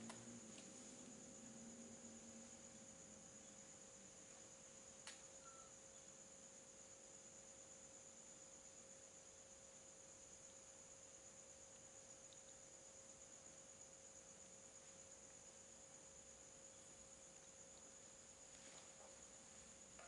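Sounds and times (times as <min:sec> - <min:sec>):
faint steady hiss: 0:00.0 - 0:20.0
thin steady hum: 0:00.0 - 0:20.0
high-pitched whine: 0:05.3 - 0:06.0.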